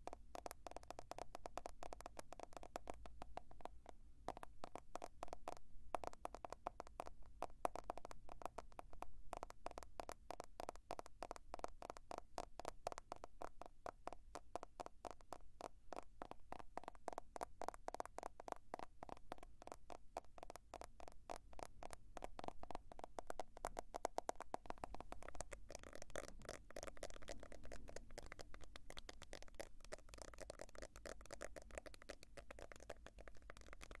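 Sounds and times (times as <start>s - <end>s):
fingers tapping on a smartphone: 0.0s - 34.0s.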